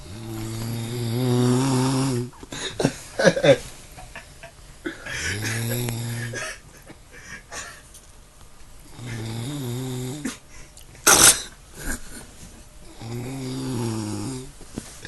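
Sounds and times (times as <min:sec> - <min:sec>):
dog snoring: 0:00.0 - 0:02.4, 0:08.9 - 0:10.4, 0:12.8 - 0:14.5.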